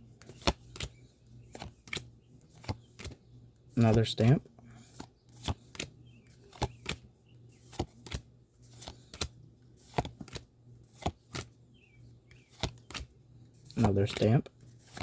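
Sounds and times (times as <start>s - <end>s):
trading cards snapping: 0.2s - 3.2s, 6.5s - 7.0s, 7.7s - 11.5s, 12.3s - 13.1s, 13.7s - 14.3s.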